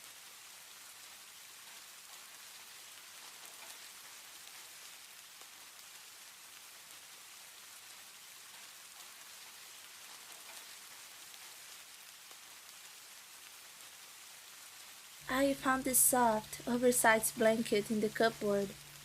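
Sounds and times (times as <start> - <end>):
steady soft rain: 0.0 - 19.0
raindrop ticks: 1.6 - 6.7, 8.6 - 12.8.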